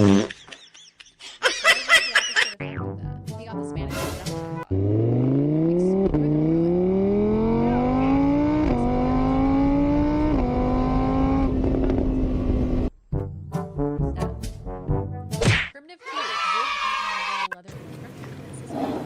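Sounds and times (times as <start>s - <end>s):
car engine accelerating through gears: 4.7s - 12.9s.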